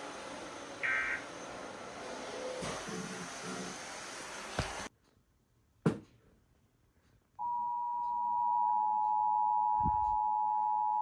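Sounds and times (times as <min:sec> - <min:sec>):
two-tone alarm: 0:00.8 - 0:01.2.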